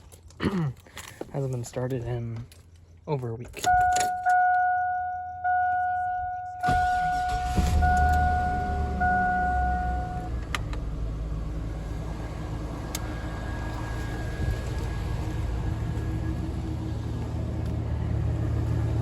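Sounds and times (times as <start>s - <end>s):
car engine cranking and idling: 0.0s - 19.0s
dashboard warning chime: 3.6s - 10.4s.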